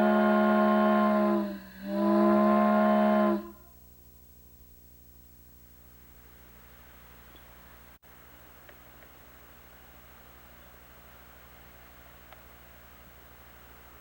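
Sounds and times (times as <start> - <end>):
steam whistle deep note: 0.0 - 3.8
faint low hum: 0.0 - 14.0.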